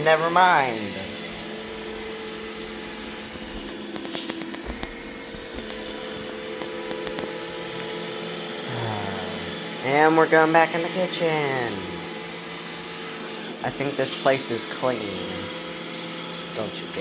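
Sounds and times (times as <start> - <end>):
robot vacuum running: 0.0 - 17.0.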